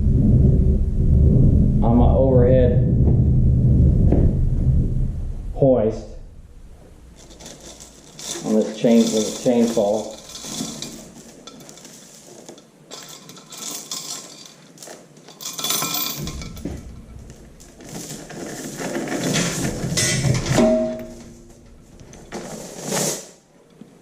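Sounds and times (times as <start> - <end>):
handling knocks: 7.1 - 22.7
hoist chain clinking and rattling: 7.2 - 23.3.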